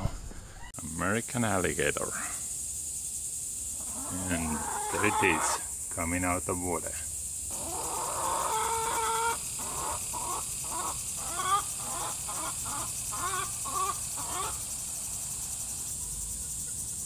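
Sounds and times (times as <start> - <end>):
high-pitched insect drone: 0.8 - 17.0
animal caw-like calls: 3.8 - 5.8, 7.5 - 14.7.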